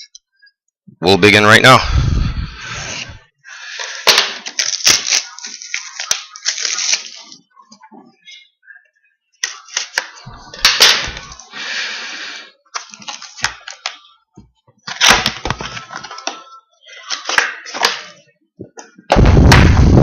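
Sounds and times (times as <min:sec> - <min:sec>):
plastic wrap crinkling and tearing: 0:04.2 - 0:07.4, 0:12.8 - 0:13.9.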